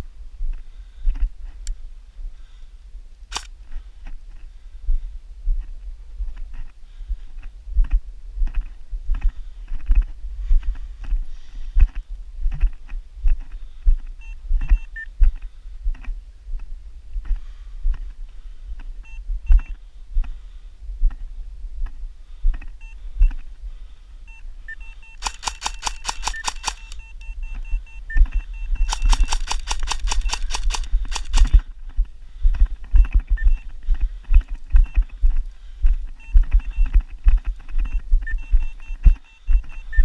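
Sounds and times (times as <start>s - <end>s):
faint repeated beeping: 14.1s - 15.2s, 19.0s - 19.8s, 22.6s - 23.5s, 24.2s - 31.8s, 32.8s - 40.0s
airsoft gun full-auto bursts: 25.0s - 27.1s, 28.8s - 31.7s.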